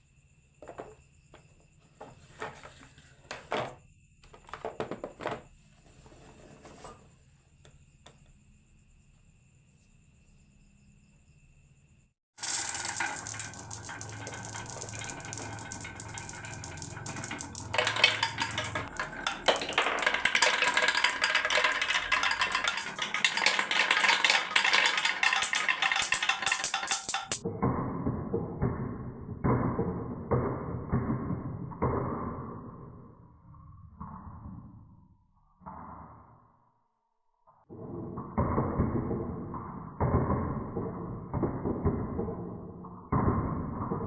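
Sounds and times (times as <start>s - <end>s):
marbles clattering down tracks: 12.4s - 33.1s, 37.7s - 44.0s.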